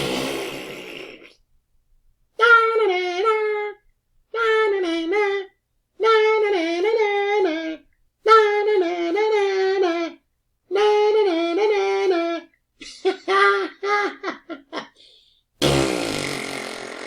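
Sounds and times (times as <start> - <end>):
high-pitched voice chanting taunt: 2.4 - 12.5.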